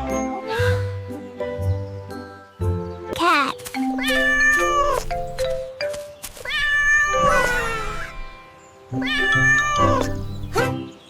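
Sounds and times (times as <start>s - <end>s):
light background tune: 0.0s - 11.0s
cat meowing: 4.0s - 5.7s, 6.4s - 8.4s, 9.0s - 10.7s.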